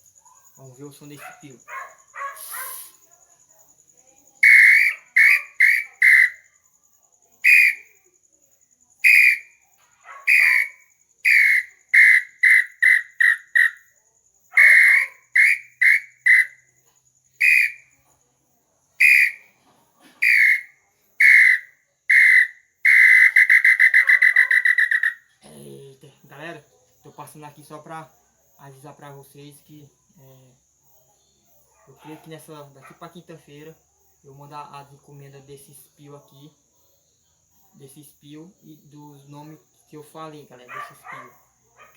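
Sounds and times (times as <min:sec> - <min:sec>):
bird-call whistle toots: 0:04.4 - 0:06.4, 0:07.4 - 0:07.9, 0:09.0 - 0:09.5, 0:10.3 - 0:13.8, 0:14.6 - 0:16.6, 0:17.4 - 0:17.9, 0:19.0 - 0:19.5, 0:20.2 - 0:25.2.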